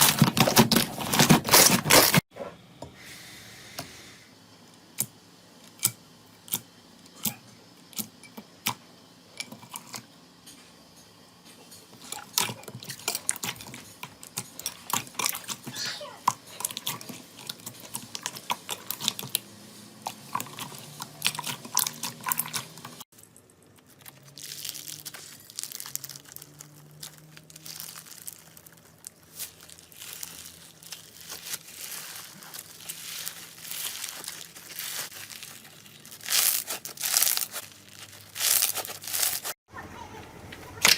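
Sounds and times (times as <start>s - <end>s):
slime popping and crackling: 23.2s - 39.5s.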